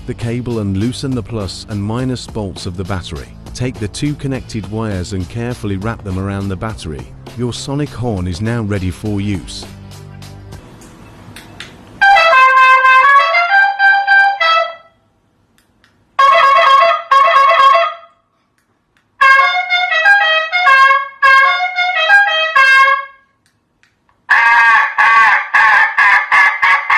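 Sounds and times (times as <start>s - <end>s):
quick repeated honks: 12.0s - 15.0s, 16.2s - 18.3s, 19.2s - 23.4s, 24.3s - 26.9s
car horn playing tunes: 12.0s - 15.1s, 16.2s - 18.1s, 19.2s - 23.4s, 24.3s - 26.9s.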